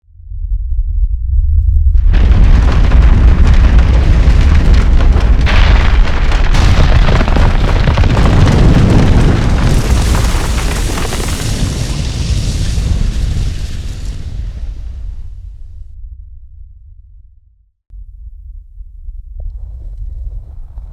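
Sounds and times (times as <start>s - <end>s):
deep rumble: 0.0s - 20.9s
debris crashing and crumbling: 2.0s - 15.0s.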